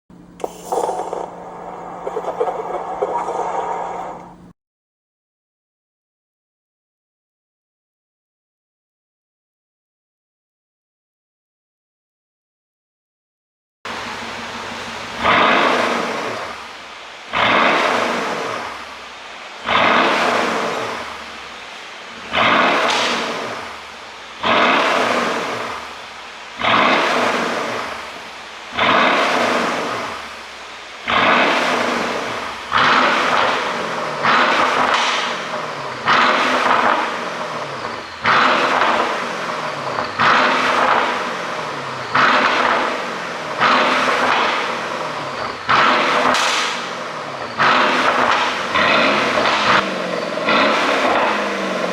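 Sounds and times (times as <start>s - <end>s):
car engine revving: 13.9s - 51.9s
exhaust pops and crackles: 19.6s - 21.5s, 22.1s - 51.9s.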